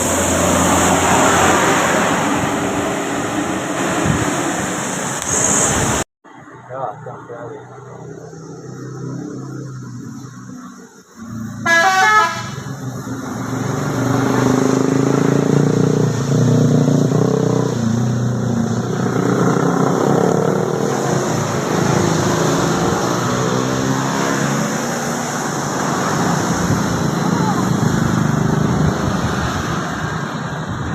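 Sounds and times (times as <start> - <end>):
bus running noise: 0.0 - 30.9
musical bus horn: 11.6 - 12.8.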